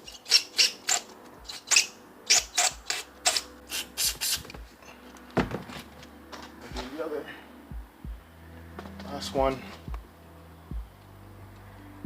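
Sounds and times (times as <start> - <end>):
aerosol spray hissing: 3.7 - 4.5.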